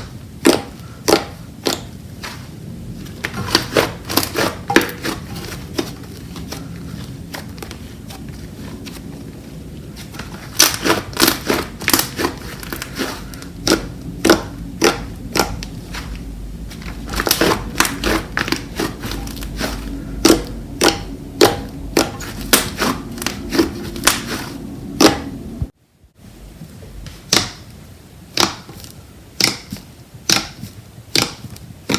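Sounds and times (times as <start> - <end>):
slime squished clicking and popping: 29.4 - 29.7, 30.3 - 31.9.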